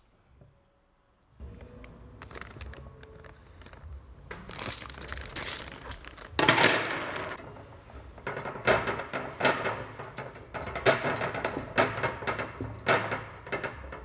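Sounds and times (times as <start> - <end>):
metal tools clinking and rattling: 4.5 - 7.6.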